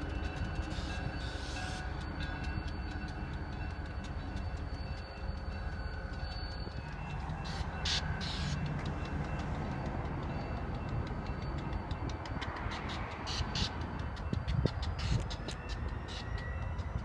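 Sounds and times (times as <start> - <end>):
diesel locomotive idling: 0.0 - 17.0.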